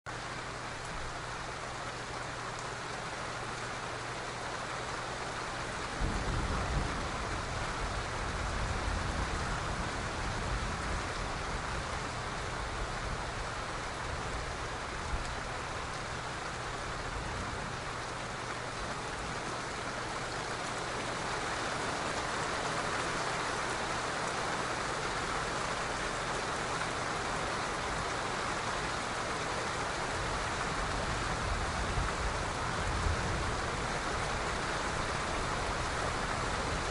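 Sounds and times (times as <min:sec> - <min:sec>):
steady rain: 0:00.1 - 0:36.9
distant thunder rumble: 0:05.9 - 0:13.3.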